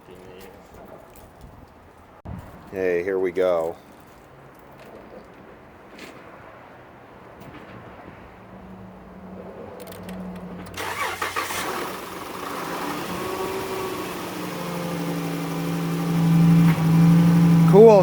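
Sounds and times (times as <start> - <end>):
car engine cranking and starting: 10.6 - 18.0.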